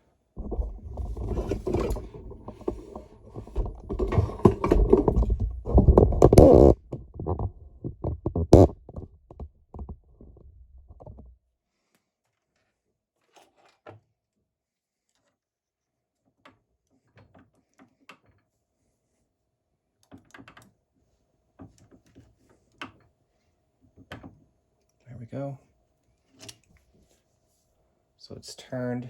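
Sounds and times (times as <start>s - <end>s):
handling clicks and knocks: 0.4s - 10.1s.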